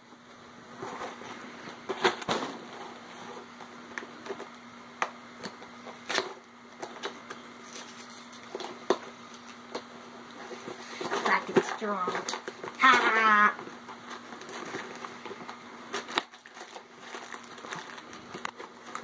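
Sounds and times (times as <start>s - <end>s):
crinkling packaging: 5.4s - 19.0s.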